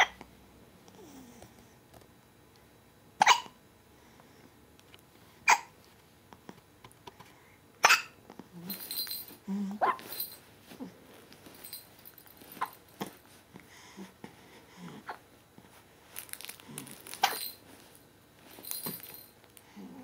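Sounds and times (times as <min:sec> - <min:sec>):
hiccups: 0:00.0 - 0:00.2, 0:03.2 - 0:03.6, 0:05.5 - 0:05.7, 0:07.8 - 0:08.2.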